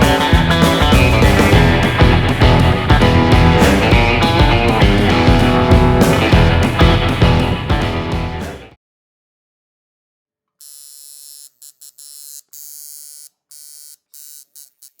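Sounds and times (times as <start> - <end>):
guitar music: 0.0 - 8.8
tattoo machine buzzing: 10.6 - 15.0.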